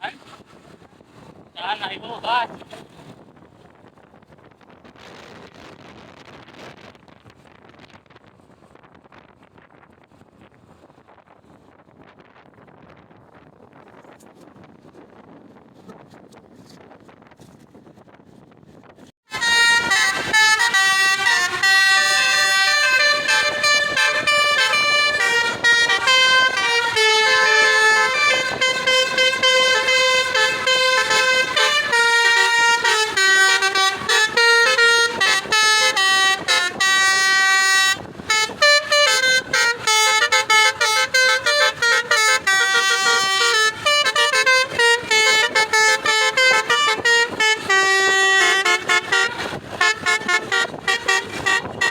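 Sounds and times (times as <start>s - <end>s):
multi-tone air horn playing a tune: 19.3s - 51.9s.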